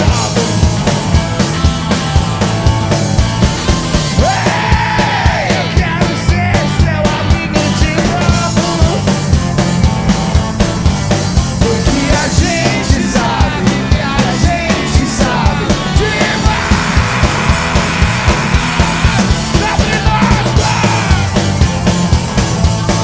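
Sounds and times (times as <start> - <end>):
drums fast steady beat: 0.0 - 23.0
loud guitars: 0.0 - 23.0
rock band playing live: 0.0 - 23.0
shouted vocals: 4.1 - 9.0, 11.7 - 21.6.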